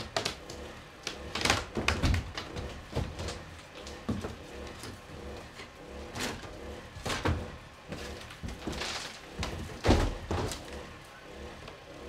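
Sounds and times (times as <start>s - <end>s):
plaster and boards crunching: 0.0s - 10.8s.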